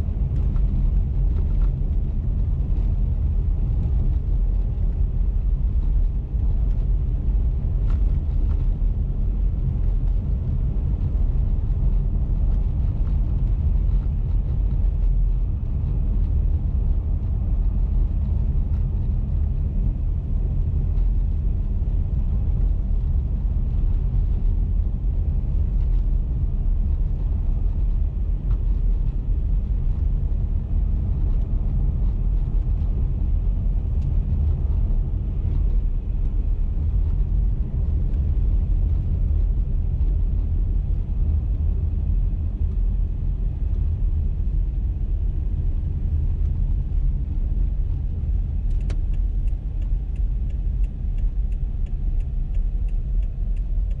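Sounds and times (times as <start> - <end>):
road and engine rumble: 0.0 - 54.0
turn signal ticking: 48.4 - 54.0.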